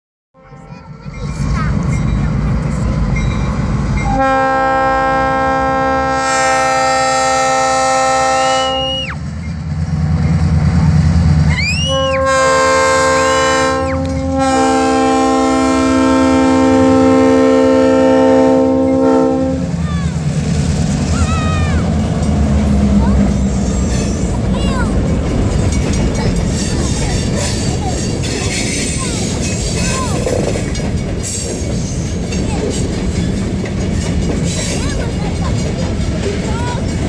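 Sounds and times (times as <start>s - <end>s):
locomotive air horn blasts: 4.1s - 9.1s, 11.9s - 19.8s.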